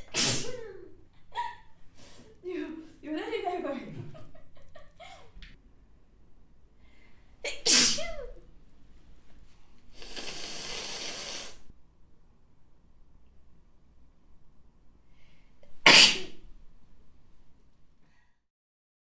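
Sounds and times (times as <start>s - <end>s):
woman sneezing: 0.0s - 0.9s, 7.4s - 8.4s, 15.9s - 16.4s
steady hiss: 9.8s - 11.8s.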